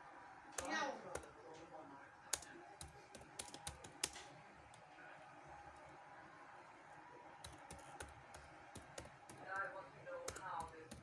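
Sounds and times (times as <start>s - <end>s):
typing on computer keyboard: 0.6s - 1.4s, 2.3s - 4.8s, 7.4s - 11.0s.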